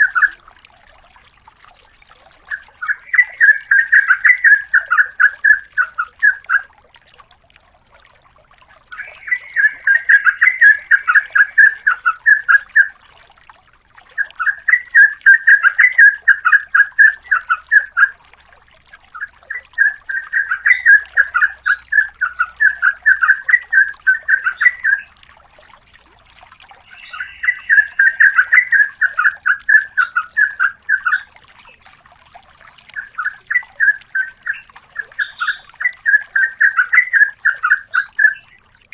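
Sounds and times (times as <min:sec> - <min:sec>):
bird chattering song: 0:02.5 - 0:06.6, 0:08.9 - 0:12.9, 0:19.2 - 0:25.1, 0:26.8 - 0:31.3, 0:32.6 - 0:38.7.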